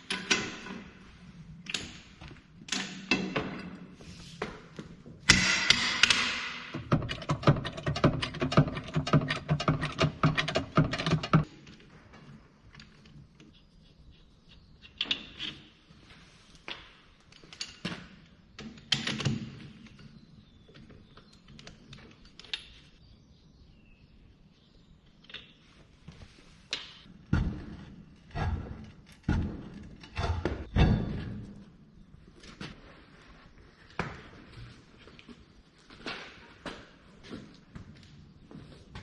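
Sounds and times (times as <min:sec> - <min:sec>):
metallic clanks and knocks: 0:00.0 - 0:01.1, 0:05.2 - 0:11.5, 0:26.9 - 0:31.7
impact wrench hammering rattle: 0:05.3 - 0:11.5.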